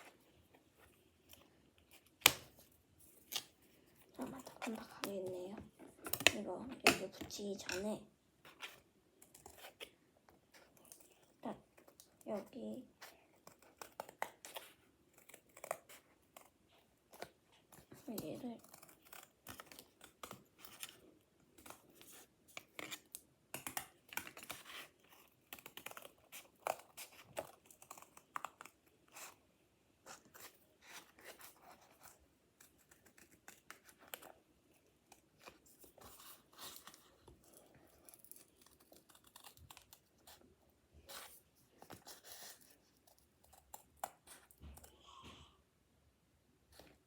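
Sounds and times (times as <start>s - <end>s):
scissors snipping: 38.0s - 40.3s.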